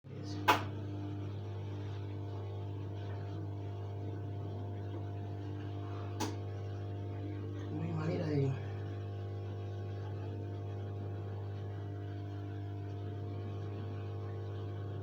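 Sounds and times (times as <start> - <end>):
washing machine spinning hum: 0.0 - 15.0.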